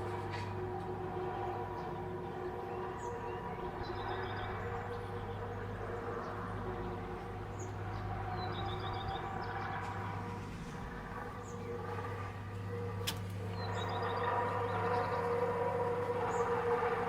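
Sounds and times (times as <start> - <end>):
low droning hum: 0.0 - 17.0
small birds chirping: 7.5 - 15.4.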